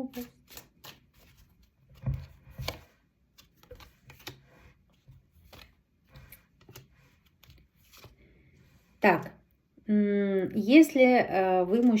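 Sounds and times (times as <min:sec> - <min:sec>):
cards shuffling and rustling: 0:00.1 - 0:08.6.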